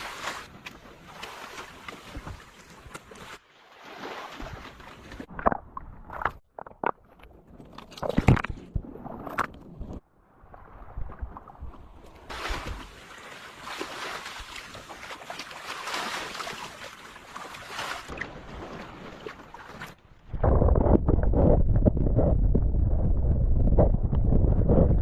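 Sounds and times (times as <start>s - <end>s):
sea waves washing onto beach: 0.0s - 4.8s, 12.3s - 19.8s.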